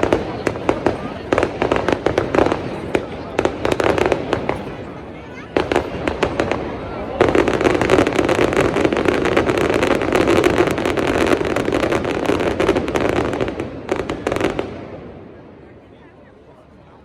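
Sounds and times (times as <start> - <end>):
fireworks crackling: 0.0 - 15.3.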